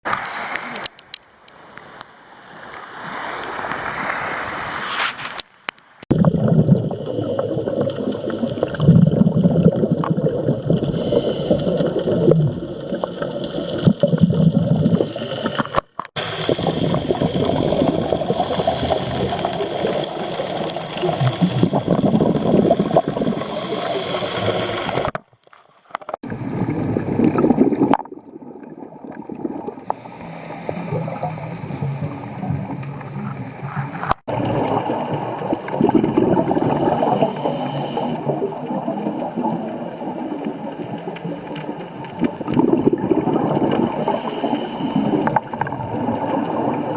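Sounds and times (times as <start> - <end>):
underwater bubbling and gurgling: 6.1 - 46.9.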